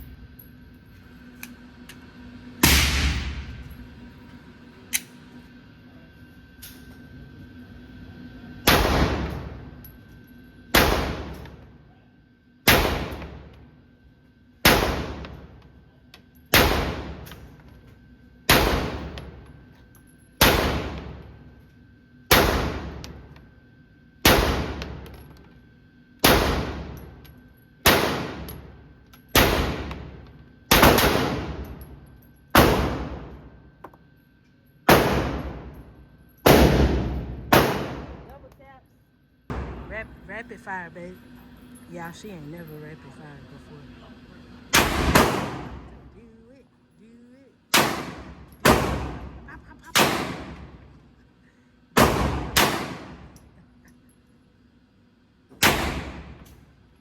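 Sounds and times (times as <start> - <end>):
pistol shots ringing out: 2.6 - 3.5, 8.6 - 9.5, 10.7 - 11.5, 12.7 - 13.4, 14.6 - 15.4, 16.5 - 17.3, 18.5 - 19.2, 20.4 - 21.1, 22.3 - 23.0, 24.2 - 25.0, 26.2 - 27.0, 27.8 - 28.6, 29.3 - 30.1, 30.7 - 31.7, 32.5 - 33.3, 34.9 - 35.7, 36.4 - 38.3, 44.7 - 46.0, 47.7 - 50.8, 52.0 - 53.3, 55.6 - 56.5.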